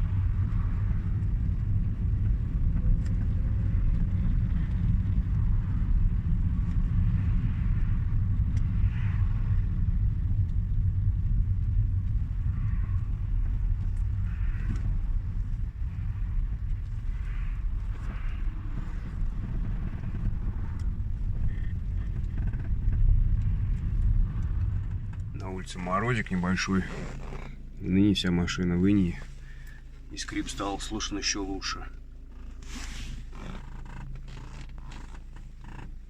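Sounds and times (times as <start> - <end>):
road and engine rumble: 0.0 - 36.0
steering squeaks: 17.9 - 27.8, 31.6 - 36.0.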